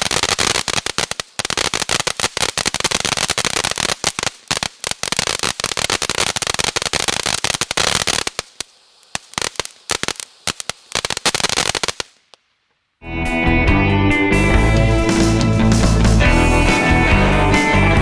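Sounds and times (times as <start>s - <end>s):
firework fountain crackling: 0.0s - 12.5s
steady hiss: 0.0s - 12.7s.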